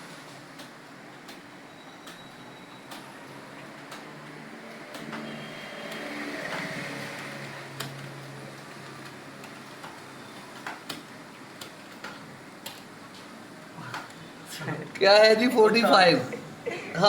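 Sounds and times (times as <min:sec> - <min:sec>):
computer keyboard typing: 0:00.5 - 0:13.2.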